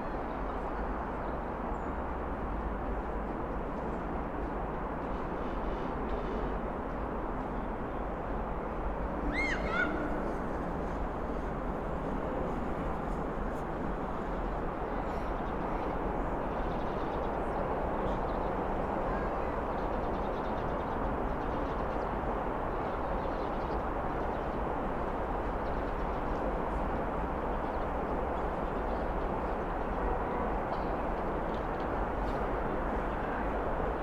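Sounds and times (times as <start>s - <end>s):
heavy traffic rumble: 8.2s - 16.7s.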